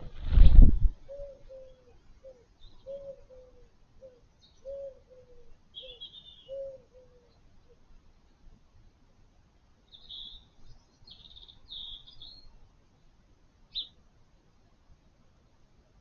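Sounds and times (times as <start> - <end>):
dove cooing: 1.0 - 7.8
small bird chirping: 1.1 - 7.4, 9.9 - 12.6, 13.7 - 14.0.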